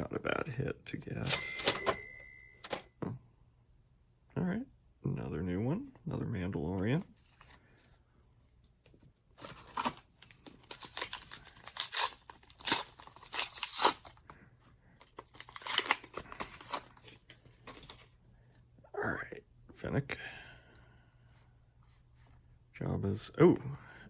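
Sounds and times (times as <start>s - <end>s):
foil wrapper tearing and crinkling: 9.4s - 14.2s, 15.0s - 18.0s.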